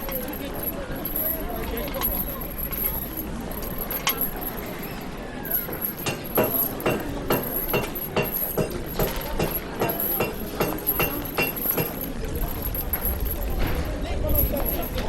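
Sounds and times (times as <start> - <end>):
low city rumble: 0.0 - 15.0
metallic clacking strikes: 5.9 - 13.9.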